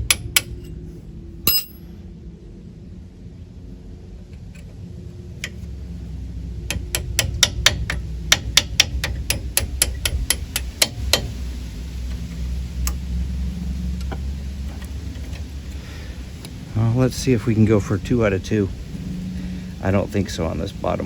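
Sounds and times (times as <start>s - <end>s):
hammer tapping metal punch: 1.5s - 1.8s, 6.7s - 11.3s.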